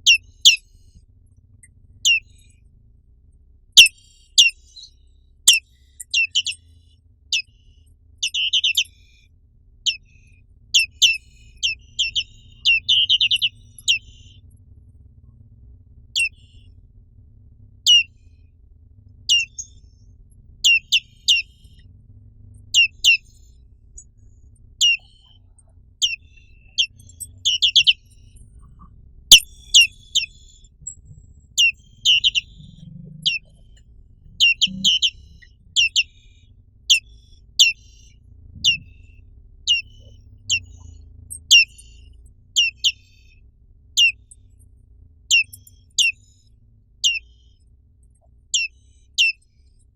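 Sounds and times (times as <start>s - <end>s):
bird high call notes: 0.0s - 0.6s, 2.0s - 2.4s, 3.8s - 4.9s, 5.5s - 6.7s, 8.2s - 9.1s, 10.8s - 14.4s, 16.2s - 16.7s, 17.9s - 18.1s, 19.3s - 19.9s, 20.6s - 21.8s, 22.7s - 43.4s, 44.0s - 44.2s, 47.0s - 47.5s
faint low hum: 0.0s - 49.9s.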